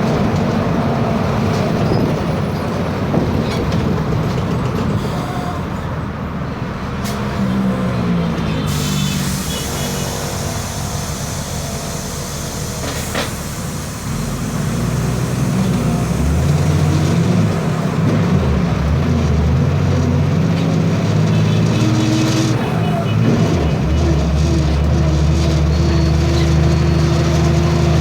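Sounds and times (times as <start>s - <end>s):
diesel bus engine running: 0.0s - 28.0s
turbo whistling: 8.6s - 13.0s.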